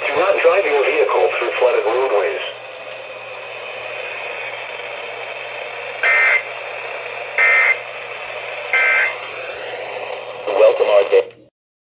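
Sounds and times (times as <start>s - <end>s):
radio hiss: 0.0s - 11.5s
warbling data tones: 4.4s - 9.8s.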